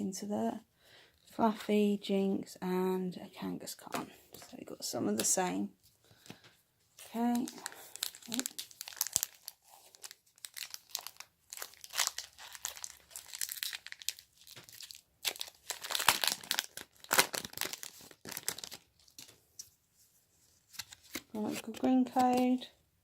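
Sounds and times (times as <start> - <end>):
foil wrapper tearing and crinkling: 7.0 - 19.3.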